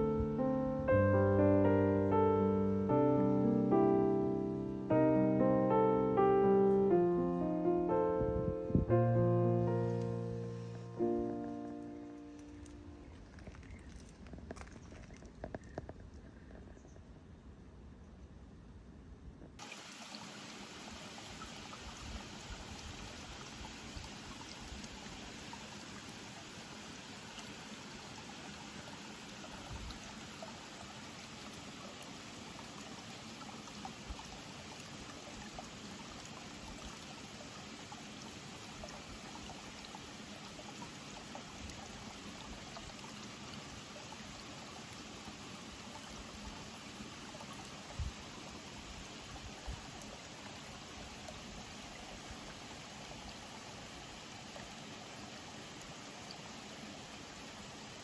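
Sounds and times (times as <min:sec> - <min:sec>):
running water trickling: 0:08.5 - 0:16.6, 0:19.6 - 0:58.0
faint ticks: 0:09.8 - 0:17.0.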